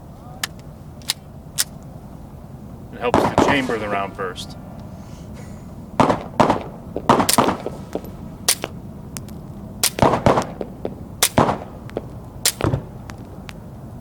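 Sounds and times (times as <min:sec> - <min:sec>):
suppressed pistol shots: 0:03.1 - 0:04.0, 0:06.0 - 0:08.8, 0:09.8 - 0:12.9.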